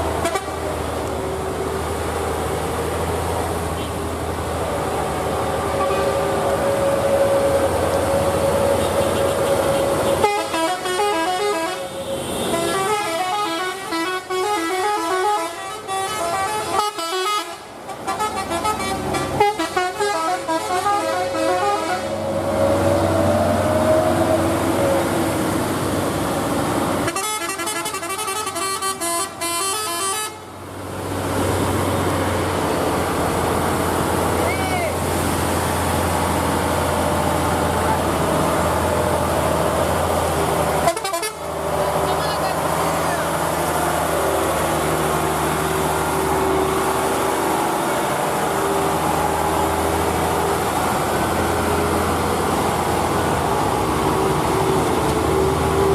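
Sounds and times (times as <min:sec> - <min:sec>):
engine humming: 0:00.0 - 0:13.7, 0:30.4 - 0:55.9
musical vehicle horn: 0:00.2 - 0:00.6, 0:05.7 - 0:06.3, 0:08.4 - 0:22.4, 0:27.0 - 0:30.4, 0:40.8 - 0:41.5.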